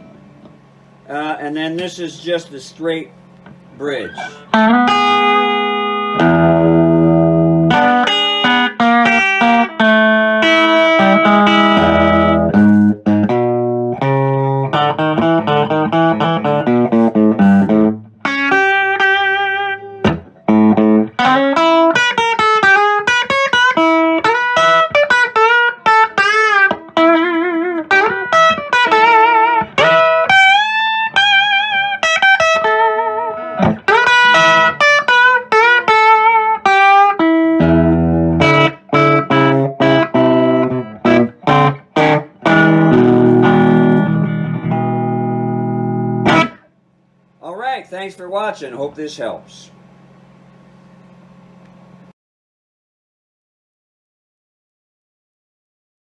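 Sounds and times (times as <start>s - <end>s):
electric guitar playing: 3.4s - 46.7s.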